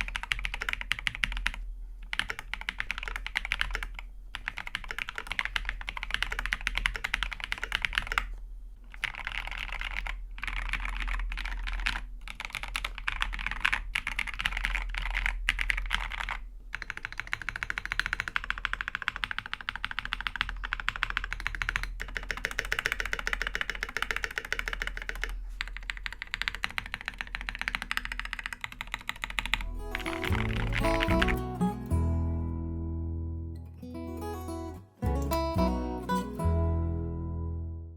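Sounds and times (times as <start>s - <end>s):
typing on a mechanical keyboard: 0.0s - 8.3s, 8.9s - 31.4s
music: 29.6s - 37.9s.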